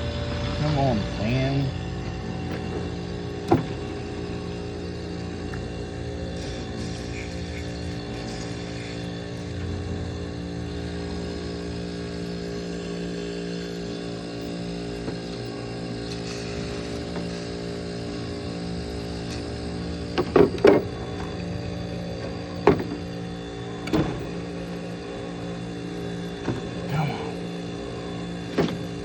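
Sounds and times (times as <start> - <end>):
air conditioner compressor humming: 0.0 - 29.0
compressor knocks: 2.0 - 4.5, 20.1 - 21.4, 22.2 - 23.1, 23.8 - 24.4, 26.4 - 26.9, 28.5 - 29.0.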